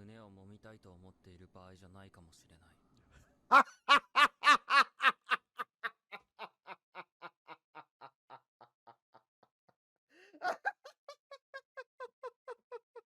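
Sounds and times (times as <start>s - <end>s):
higher-pitched laughter: 3.5s - 9.2s, 10.2s - 13.0s
rhythmic laughter: 3.5s - 9.5s, 10.2s - 13.0s.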